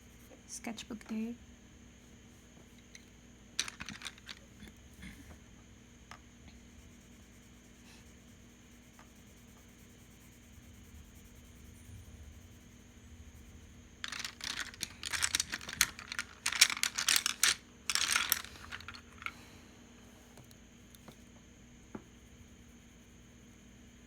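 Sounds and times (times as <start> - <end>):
small hard objects clattering: 3.6 - 4.4, 14.0 - 19.4.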